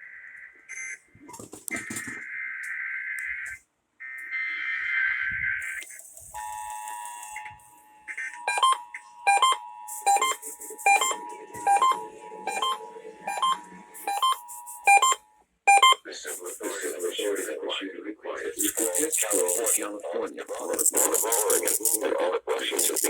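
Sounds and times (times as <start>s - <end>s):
data burst tones: 5.5s - 16.0s, 18.6s - 19.9s, 20.7s - 22.0s
short sharp beeps: 6.4s - 16.0s
two-tone attention signal: 6.4s - 16.0s.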